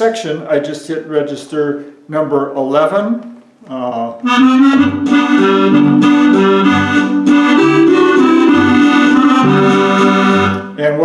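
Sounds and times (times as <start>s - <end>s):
accordion playing a waltz: 4.2s - 10.8s.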